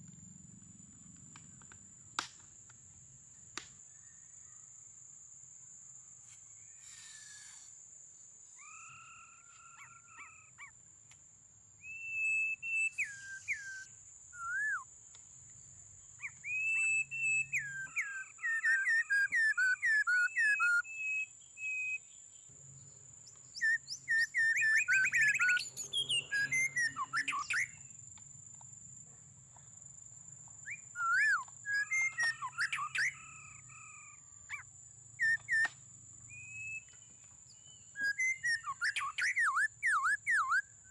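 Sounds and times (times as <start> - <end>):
bird chirping: 8.6 - 10.8, 11.8 - 14.8, 15.6 - 27.9, 30.6 - 40.9.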